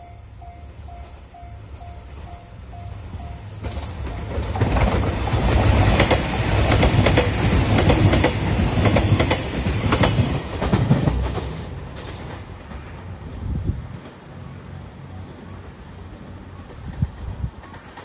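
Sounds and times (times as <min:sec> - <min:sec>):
diesel train passing: 0:00.0 - 0:18.0
wheels clicking over rail joints: 0:03.6 - 0:13.2.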